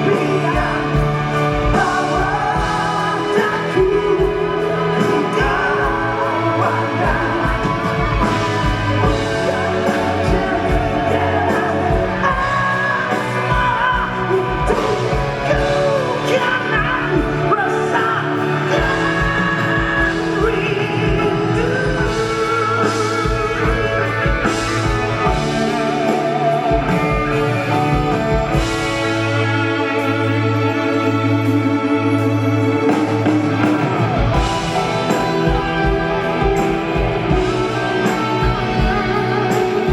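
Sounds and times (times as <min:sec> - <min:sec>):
person singing long notes: 0:00.0 - 0:39.9
pop-rock band playing: 0:00.0 - 0:39.9.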